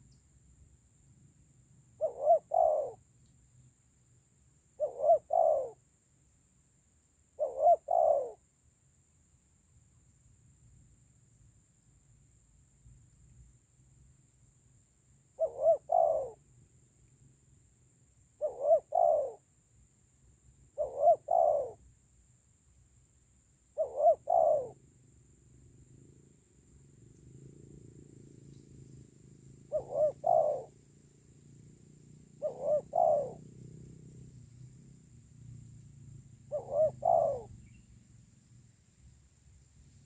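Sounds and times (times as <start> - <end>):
dove cooing: 1.9 - 3.0, 4.8 - 5.8, 7.4 - 8.4, 15.4 - 16.5, 18.4 - 19.5, 20.7 - 21.9, 23.7 - 24.8, 28.9 - 30.9, 32.2 - 34.4, 36.3 - 37.8.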